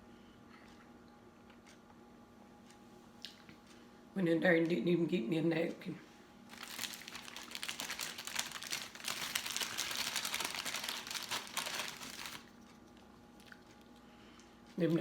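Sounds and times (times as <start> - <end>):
food packaging rustling: 6.5 - 12.8.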